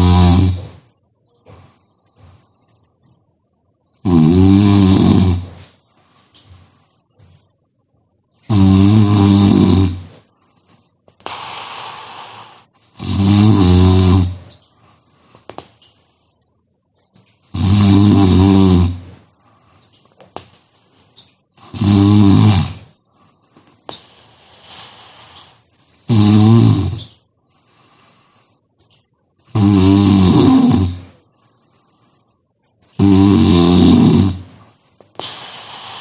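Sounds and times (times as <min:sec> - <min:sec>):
person snoring heavily: 0:00.0 - 0:00.8, 0:04.0 - 0:05.8, 0:08.5 - 0:10.3, 0:11.3 - 0:14.5, 0:17.5 - 0:19.2, 0:21.6 - 0:23.0, 0:24.3 - 0:27.1, 0:29.5 - 0:31.2, 0:33.0 - 0:34.6, 0:35.2 - 0:36.0
breathy exhalations: 0:33.9 - 0:36.0.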